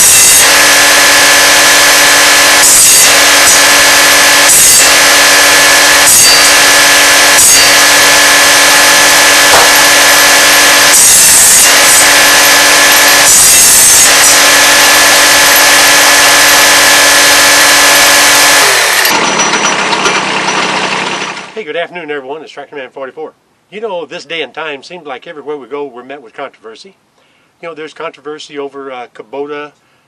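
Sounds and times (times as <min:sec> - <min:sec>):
circular saw cutting wood: 0:00.0 - 0:21.6.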